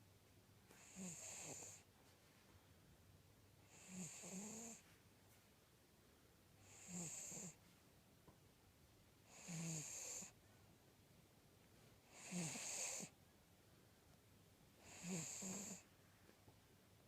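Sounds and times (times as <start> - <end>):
dog snoring: 0.7 - 1.8, 3.6 - 4.8, 6.6 - 7.6, 9.2 - 10.4, 12.0 - 13.1, 14.8 - 15.9.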